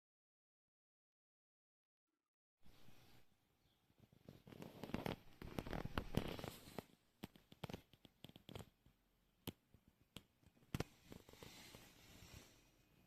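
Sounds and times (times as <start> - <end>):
hand rustling: 4.3 - 8.6.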